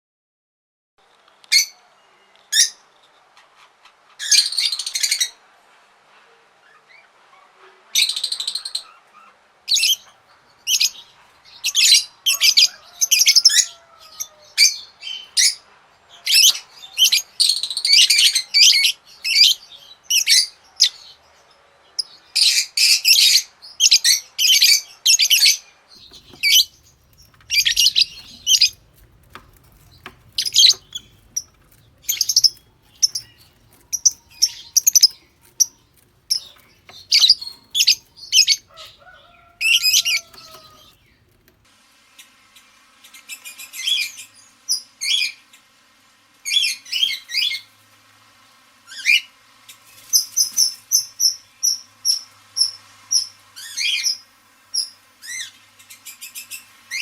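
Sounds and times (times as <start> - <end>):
parrots chirping and squawking: 11.6 - 15.6, 24.0 - 41.6.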